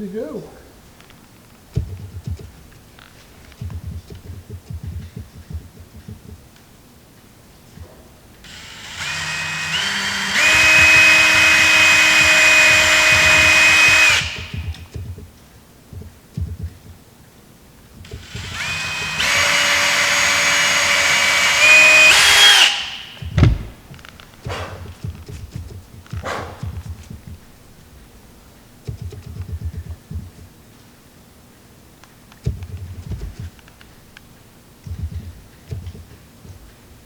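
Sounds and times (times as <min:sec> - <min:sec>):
power drill driving screws into wood: 0:08.5 - 0:14.7, 0:18.1 - 0:23.8
short thump: 0:23.2 - 0:25.4.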